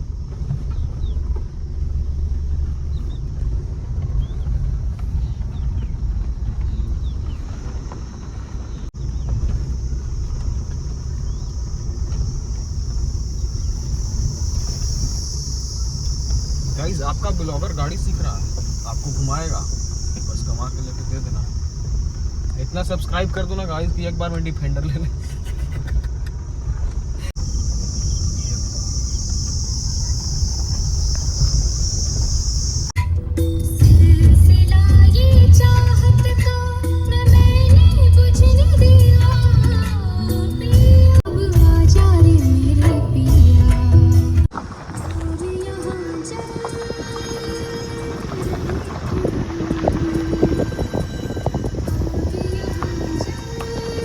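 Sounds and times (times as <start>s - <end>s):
car engine and road noise: 0.0s - 54.0s
high-pitched hiss: 9.6s - 25.8s, 27.2s - 54.0s.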